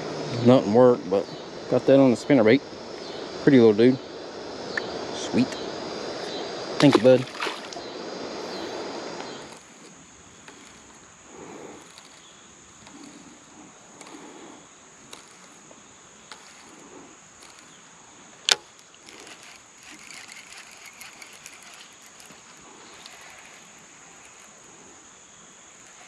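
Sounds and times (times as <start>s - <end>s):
steady high-pitched hum: 0.0s - 26.0s
soft rustling water movements: 5.8s - 12.1s.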